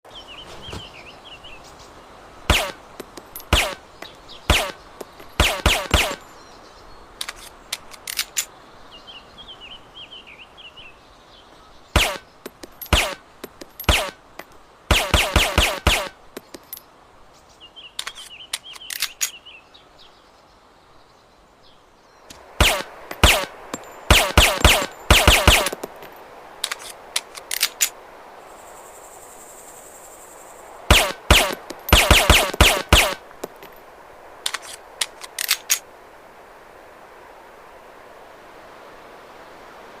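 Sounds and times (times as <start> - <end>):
small birds chirping: 0.0 - 27.9
suppressed pistol shots: 2.5 - 3.8, 4.5 - 6.2, 12.0 - 12.2, 12.8 - 13.2, 13.8 - 14.2, 14.9 - 16.2, 22.6 - 26.0, 30.9 - 33.5.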